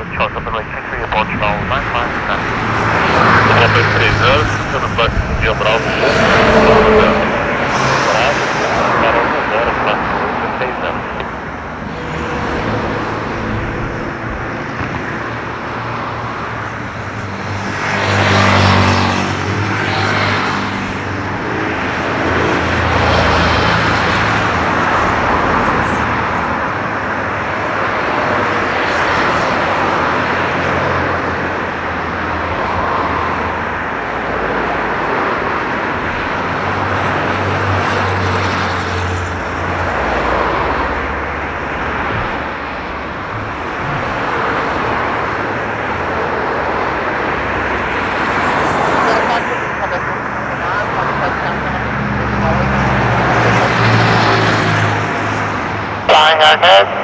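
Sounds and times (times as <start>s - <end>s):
jet engines running: 0.0s - 57.0s.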